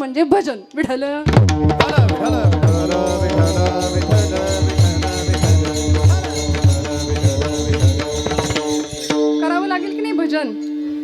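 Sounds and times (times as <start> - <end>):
hand drum beating: 1.2 - 10.0
steady held notes: 1.9 - 11.0
metallic cymbal strikes: 2.2 - 11.0.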